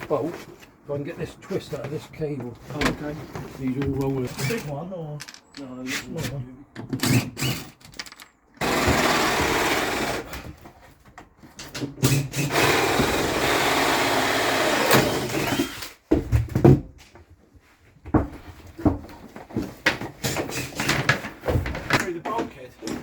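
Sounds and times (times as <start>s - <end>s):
handling knocks and clicks: 1.7s - 8.6s
power drill running: 7.1s - 7.7s, 8.6s - 10.4s, 12.1s - 15.9s.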